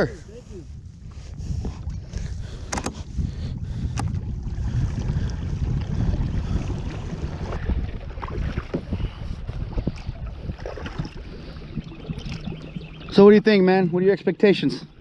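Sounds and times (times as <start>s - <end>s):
wind buffeting microphone: 0.0s - 14.1s
paddle splashes and knocks: 3.9s - 12.9s.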